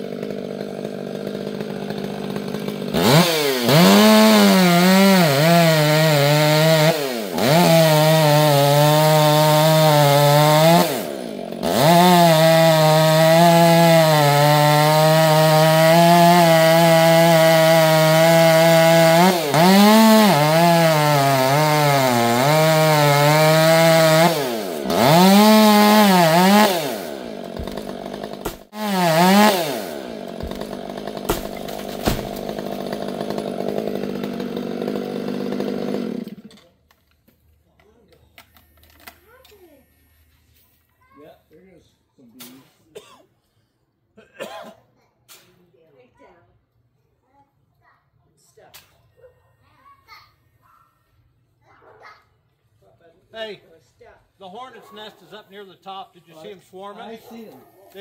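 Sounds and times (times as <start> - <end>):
chainsaw revving and cutting wood: 0.0 - 36.8, 54.4 - 58.0.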